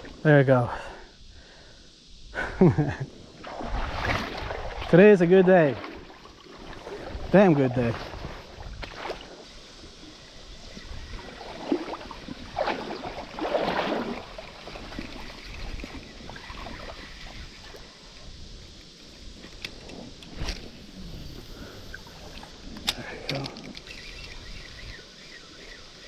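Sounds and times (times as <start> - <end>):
water lapping around kayak: 3.2 - 26.0
sharp click: 22.7 - 24.5.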